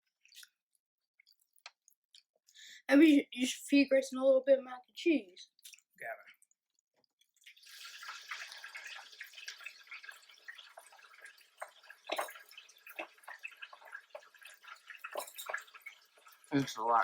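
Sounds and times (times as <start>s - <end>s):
chicken sizzling in deep-fryer oil: 7.4s - 16.6s.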